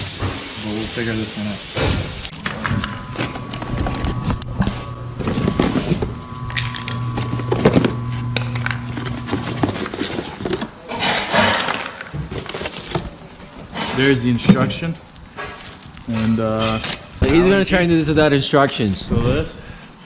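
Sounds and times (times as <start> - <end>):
steady low hum: 2.3 - 20.0.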